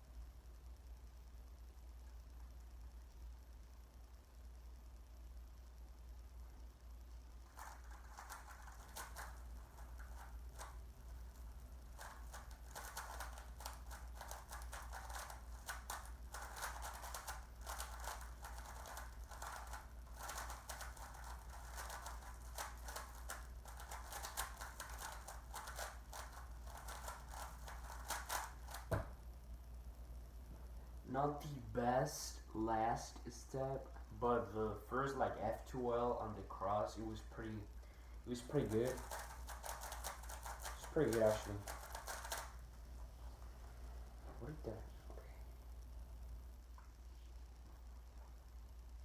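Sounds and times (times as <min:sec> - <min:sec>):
steady low hum: 0:00.0 - 0:49.0
puzzle cube plastic clicks: 0:07.5 - 0:10.8, 0:11.4 - 0:28.9, 0:38.4 - 0:42.6.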